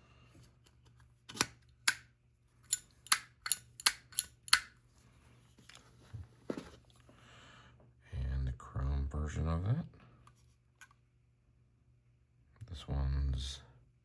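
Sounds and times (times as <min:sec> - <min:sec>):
metal lighter lid clicks: 0:02.7 - 0:04.7.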